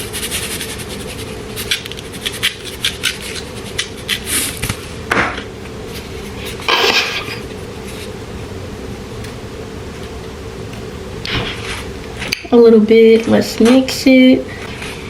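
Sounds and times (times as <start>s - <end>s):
brushing scrape: 0.0s - 4.6s.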